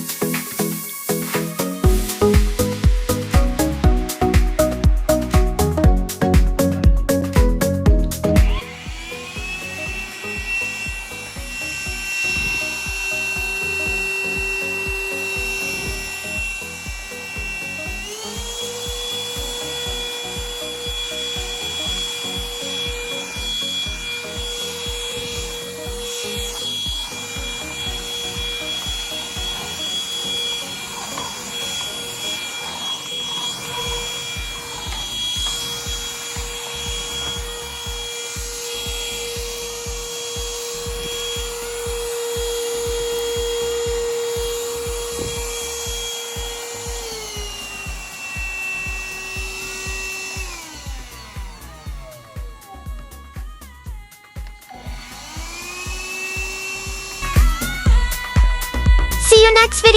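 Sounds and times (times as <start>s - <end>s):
background music with beat: 0.0s - 59.9s
vacuum cleaner motor whine: 0.0s - 59.9s.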